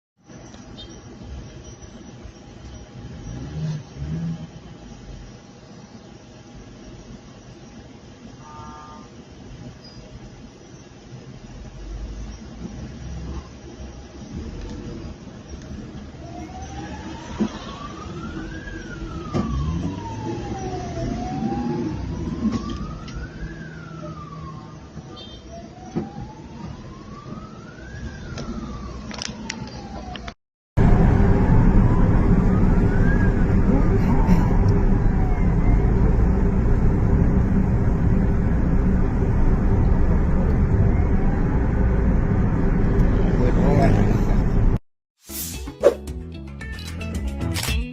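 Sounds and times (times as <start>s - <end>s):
road and engine noise: 0.2s - 44.8s
emergency siren wailing: 15.8s - 44.1s.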